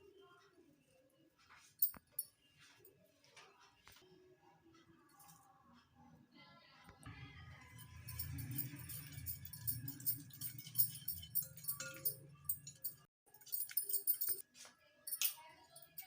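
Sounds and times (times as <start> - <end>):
jingling percussion: 7.6 - 14.4.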